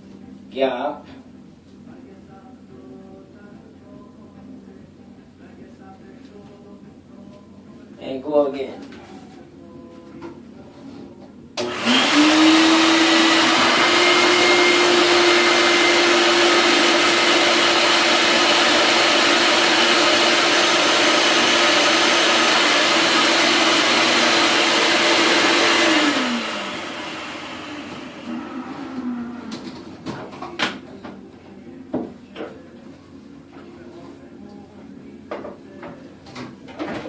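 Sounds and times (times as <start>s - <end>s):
shop vacuum motor running: 11.6s - 30.2s.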